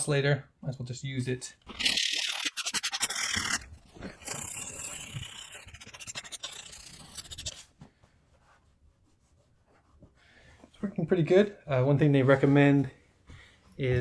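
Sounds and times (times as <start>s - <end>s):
sandpaper scratching: 1.7s - 7.7s.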